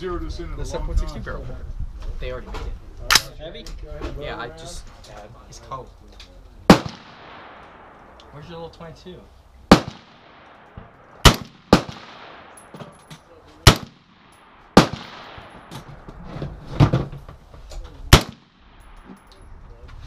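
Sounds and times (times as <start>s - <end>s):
rifle shots echoing: 6.7s - 8.4s, 9.7s - 13.0s, 13.6s - 16.1s, 18.1s - 19.1s.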